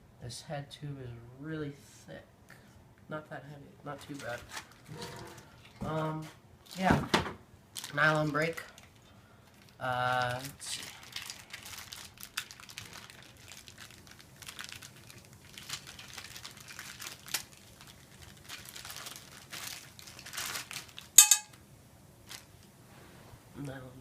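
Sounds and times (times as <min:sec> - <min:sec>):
packaging crinkling and rustling: 0:04.0 - 0:05.9, 0:07.7 - 0:21.2, 0:22.2 - 0:22.7.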